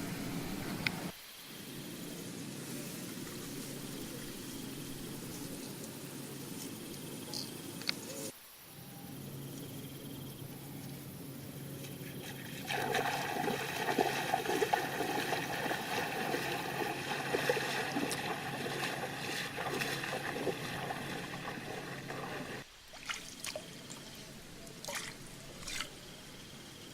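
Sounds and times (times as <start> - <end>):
water trickling and splashing: 11.8 - 26.0.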